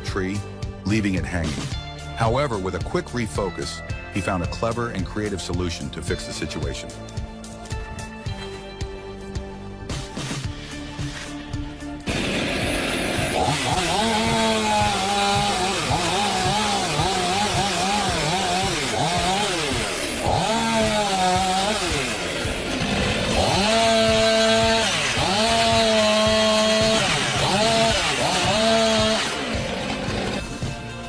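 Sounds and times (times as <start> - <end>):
chainsaw cutting wood: 12.0 - 30.9.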